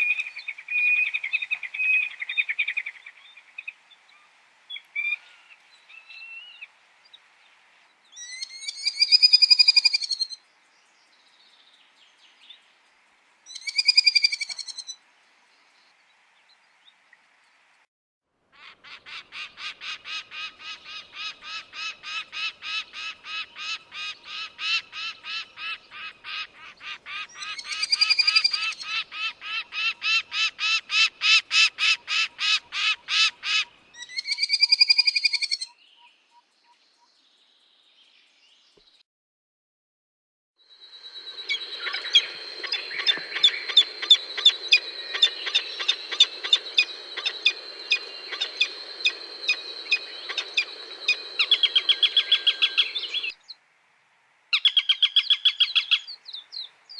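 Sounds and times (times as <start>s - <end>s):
falcon cackling calls: 18.6s - 35.6s, 41.5s - 53.3s.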